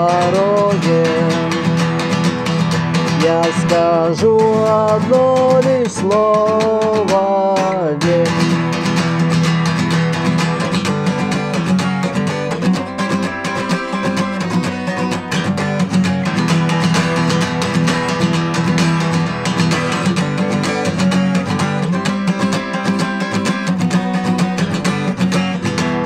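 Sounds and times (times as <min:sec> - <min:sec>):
guitar strumming: 0:00.0 - 0:26.0.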